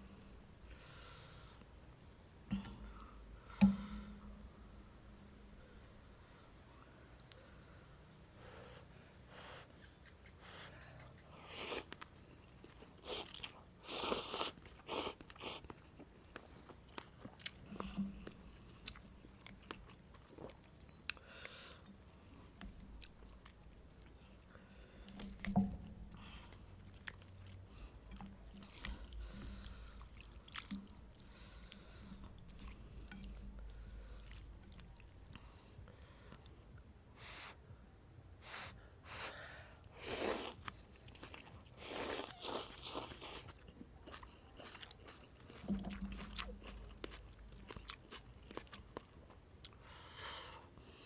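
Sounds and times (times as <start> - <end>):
person chewing and eating: 9.9 - 36.6, 40.0 - 50.0.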